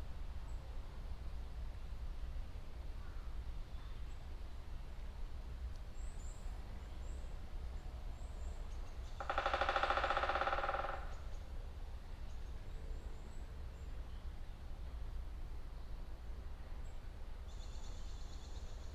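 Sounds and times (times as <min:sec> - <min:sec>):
woodpecker drumming on a tree: 0:09.0 - 0:11.4.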